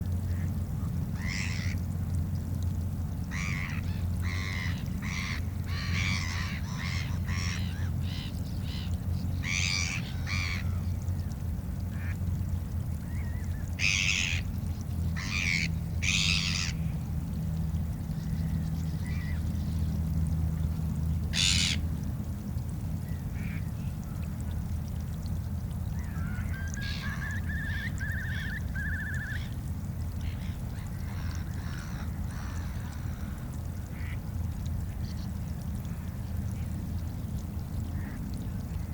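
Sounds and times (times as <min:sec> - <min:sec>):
steady low rumble: 0:00.0 - 0:28.0, 0:29.4 - 0:38.9
gulls calling harshly: 0:26.0 - 0:29.7.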